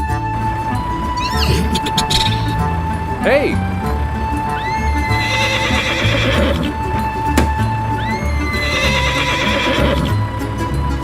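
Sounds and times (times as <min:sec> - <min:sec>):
background music with steady beat: 0:00.0 - 0:11.0
horse whinnying: 0:01.0 - 0:03.0, 0:04.2 - 0:07.2, 0:07.9 - 0:10.2.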